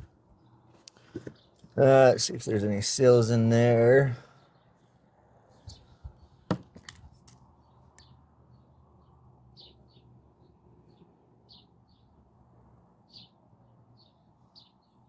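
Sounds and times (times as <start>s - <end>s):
birds chirping: 0.0s - 12.2s, 13.1s - 15.0s
parts clicking when handled: 6.6s - 7.4s.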